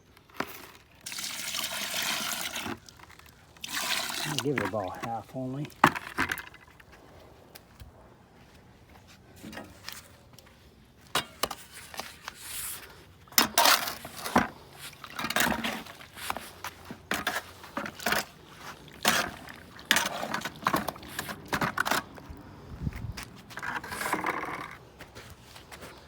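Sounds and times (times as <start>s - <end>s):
mixing tool scraping bucket: 0.4s - 6.7s, 11.6s - 22.2s, 23.5s - 26.0s.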